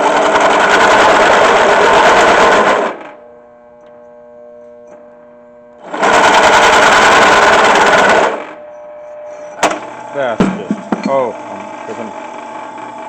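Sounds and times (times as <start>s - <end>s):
faint machine hum: 3.0s - 5.8s, 8.3s - 13.0s.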